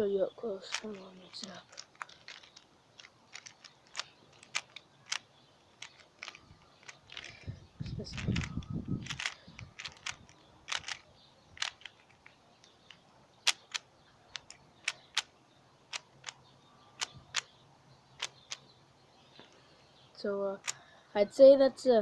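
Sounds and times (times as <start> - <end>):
puzzle cube layers clicking: 0.6 - 15.3, 15.9 - 16.4, 17.0 - 17.5, 18.2 - 18.6.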